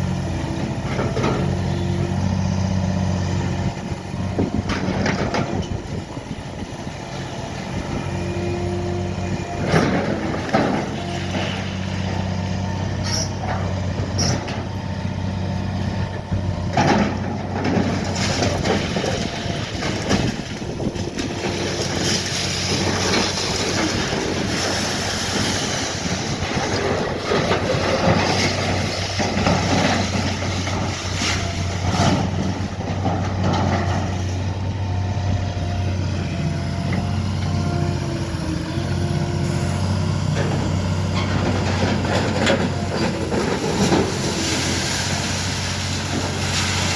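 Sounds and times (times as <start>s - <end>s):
large engine running: 0.0s - 46.9s
debris crunching and scraping: 16.7s - 34.5s, 40.4s - 46.9s.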